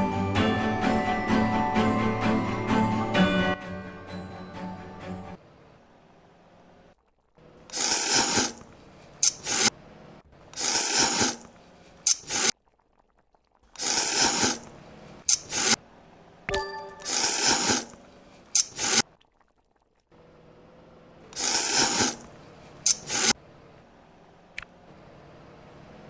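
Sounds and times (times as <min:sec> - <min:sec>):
wet eating sounds: 0:17.1 - 0:20.0.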